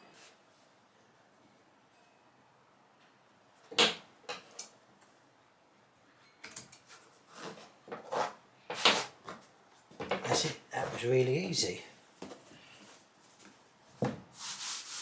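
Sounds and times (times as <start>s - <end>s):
scrapes and rustles: 6.7s - 11.3s, 12.2s - 15.0s.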